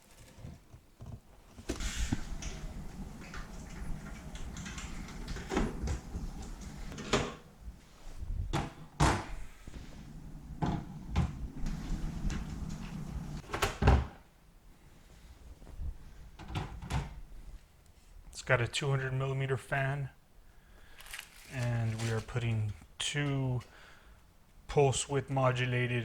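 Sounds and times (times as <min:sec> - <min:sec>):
packaging rustling: 0:20.9 - 0:22.4.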